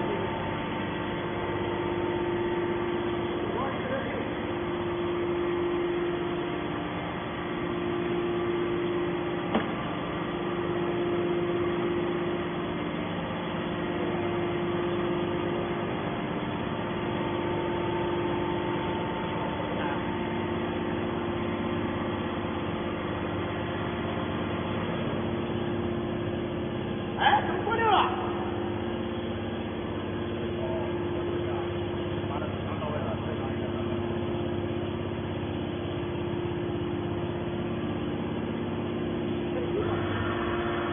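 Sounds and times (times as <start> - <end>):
machine humming: 0.0 - 40.9.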